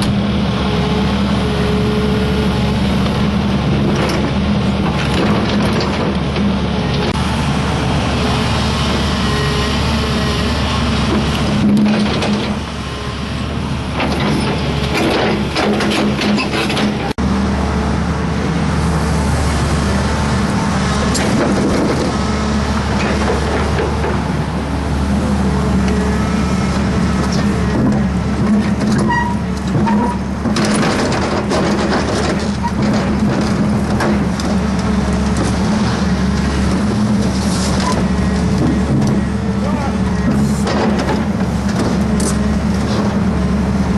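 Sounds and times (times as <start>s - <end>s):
excavator diesel engine running: 0.0s - 43.9s
metal clanks and knocks: 14.0s - 17.2s.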